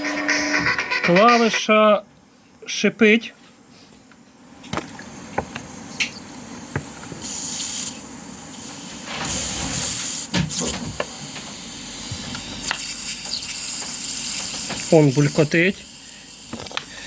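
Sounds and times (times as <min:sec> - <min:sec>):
compressed air hissing: 0:07.2 - 0:08.0, 0:12.8 - 0:17.0.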